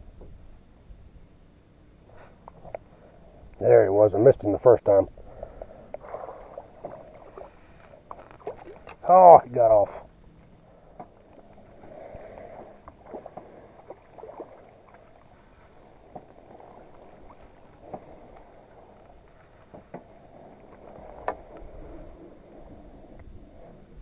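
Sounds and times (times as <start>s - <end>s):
water lapping against boat hull: 4.2s - 10.1s, 10.7s - 23.7s.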